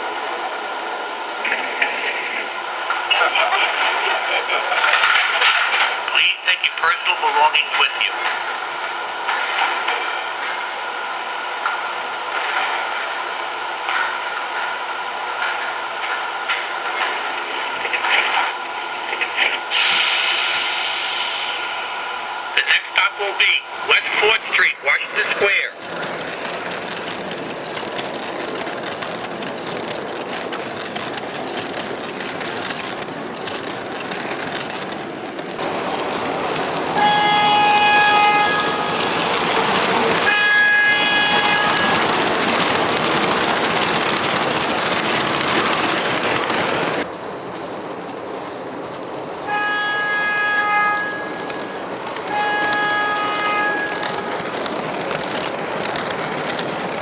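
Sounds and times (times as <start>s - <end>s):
model train subway running sounds: 0.0s - 57.0s
train horn blasts: 37.0s - 38.9s, 40.2s - 41.9s, 49.5s - 51.3s, 52.3s - 54.0s.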